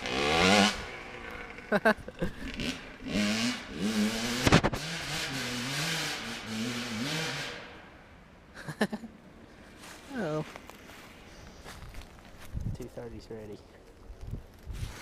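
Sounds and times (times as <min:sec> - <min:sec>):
motorcycle engine revving: 0:00.0 - 0:07.9.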